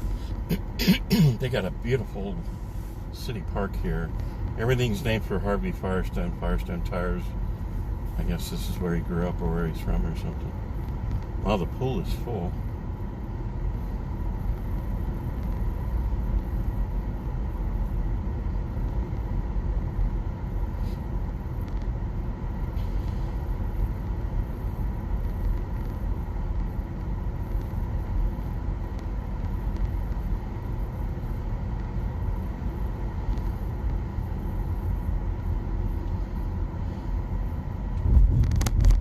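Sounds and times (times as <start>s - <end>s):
low rumble: 0.0s - 39.0s
road and tyre rumble in car cabin: 0.0s - 39.0s.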